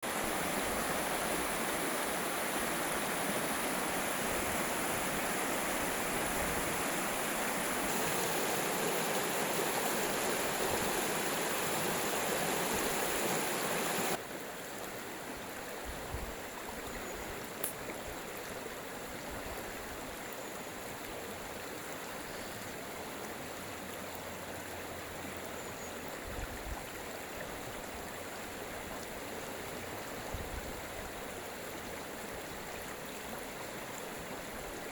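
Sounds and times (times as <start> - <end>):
stream water rushing: 0.0 - 34.9
faint clicks: 17.6 - 17.8.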